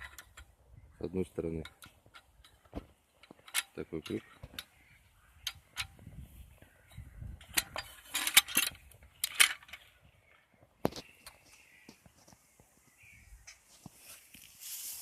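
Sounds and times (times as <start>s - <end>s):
winch metal clinking and rattling: 0.0s - 0.6s, 1.3s - 6.1s, 6.8s - 10.0s.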